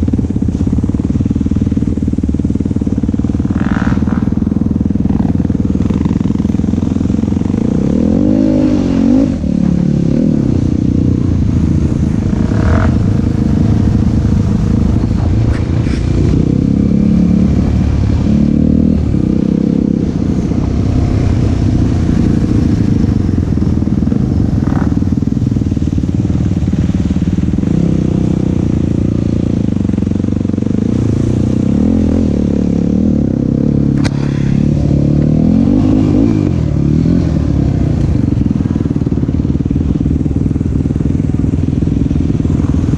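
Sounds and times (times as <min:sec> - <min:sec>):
quad engine revving: 0:03.4 - 0:25.2, 0:27.7 - 0:39.8.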